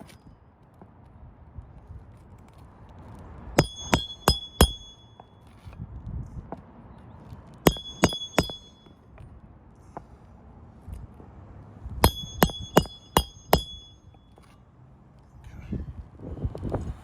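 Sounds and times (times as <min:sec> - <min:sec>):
hammer driving nails: 0:03.6 - 0:05.1, 0:07.7 - 0:08.9, 0:12.0 - 0:14.0.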